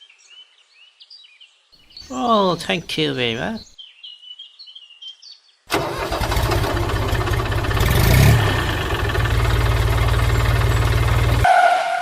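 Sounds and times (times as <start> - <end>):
engine idling: 5.8 - 11.5.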